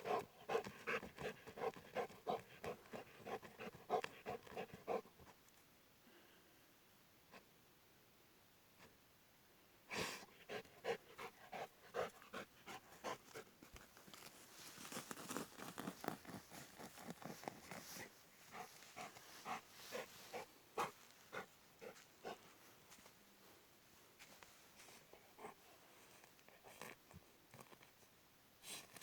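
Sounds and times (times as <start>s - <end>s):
dog panting: 0.0s - 5.1s, 10.0s - 13.5s, 15.8s - 22.5s.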